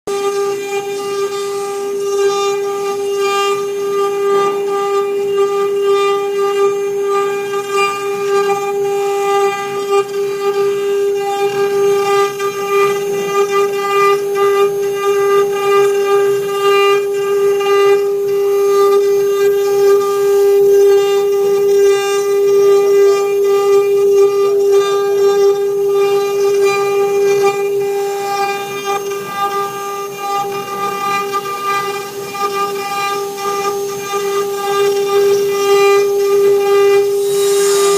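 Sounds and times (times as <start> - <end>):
router spindle whine: 0.1 - 37.9
wood cutting chatter: 28.3 - 37.9.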